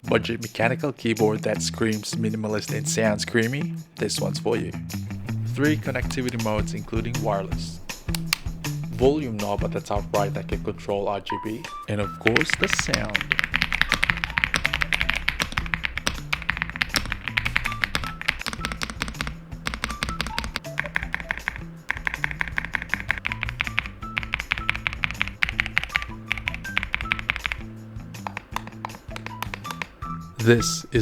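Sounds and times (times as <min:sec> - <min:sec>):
background music: 0:05.1 - 0:31.0
mechanical keyboard typing: 0:05.2 - 0:30.1.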